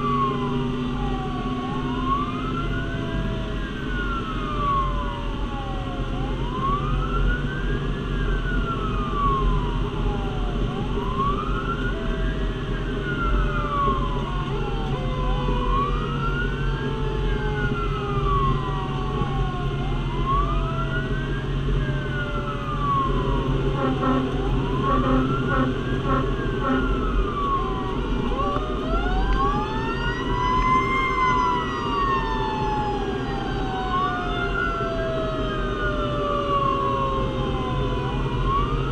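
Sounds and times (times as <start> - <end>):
fire engine siren wailing: 0.0 - 38.9
lower siren tone: 0.0 - 38.9
rapid pulsing siren tone: 0.0 - 38.9.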